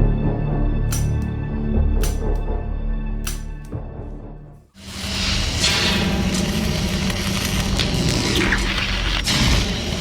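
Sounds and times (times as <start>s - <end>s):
background music: 0.0s - 5.9s.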